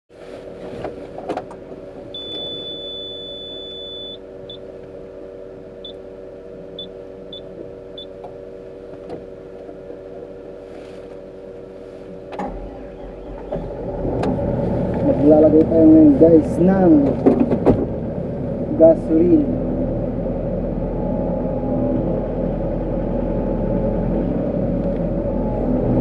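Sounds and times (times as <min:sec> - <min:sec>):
motor whining steadily: 0:01.4 - 0:10.7, 0:11.3 - 0:26.0
high beeps: 0:02.2 - 0:04.2.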